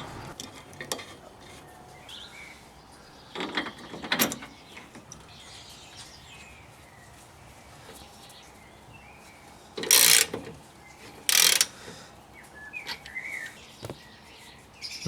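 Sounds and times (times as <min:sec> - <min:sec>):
ratchet wrench clicking: 0:09.9 - 0:10.3, 0:11.3 - 0:11.7.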